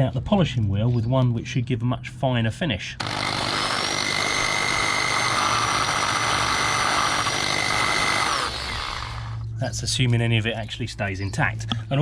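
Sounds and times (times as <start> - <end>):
electric drill motor whine: 3.0 - 9.4.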